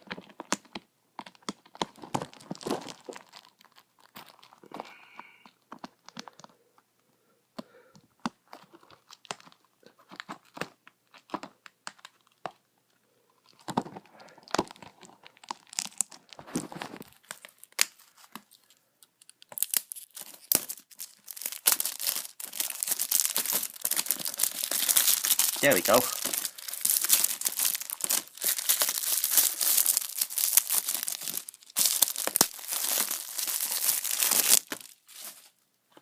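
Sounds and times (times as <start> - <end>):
plastic shrink-wrap tearing and crinkling: 0.0 - 4.7, 13.5 - 35.6.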